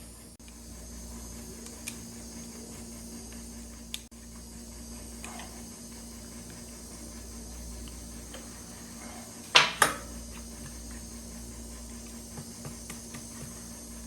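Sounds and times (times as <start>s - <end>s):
steady low hum: 0.0s - 14.0s
sharp knocks of microwave parts: 9.5s - 10.1s.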